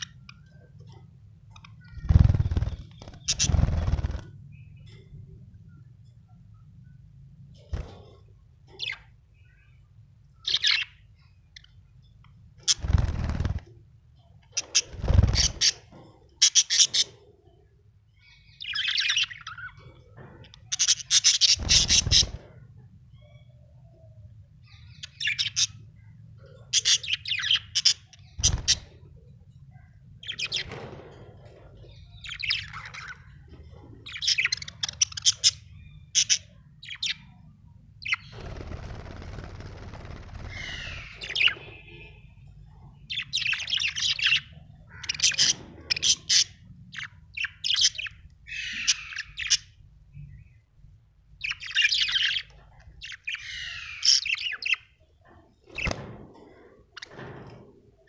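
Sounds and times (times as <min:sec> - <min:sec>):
budgerigar chirping: 0:40.4 - 0:42.1, 0:43.1 - 0:49.8, 0:51.4 - 0:55.0.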